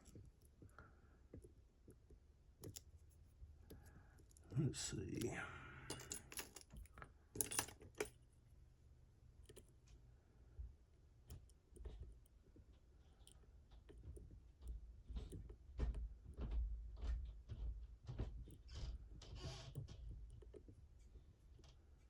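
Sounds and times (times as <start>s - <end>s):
lock picks clicking and scraping: 2.6s - 4.5s, 5.9s - 8.3s.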